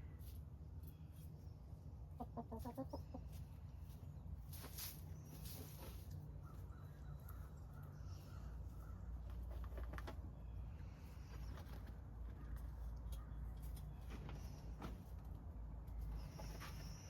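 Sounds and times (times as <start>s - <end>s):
low steady rumble: 0.0s - 17.0s
bird calls: 5.1s - 9.2s.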